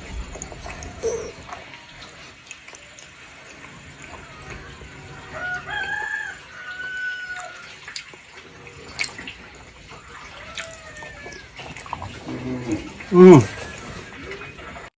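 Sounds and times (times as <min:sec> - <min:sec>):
rooster crowing: 0:05.0 - 0:07.6.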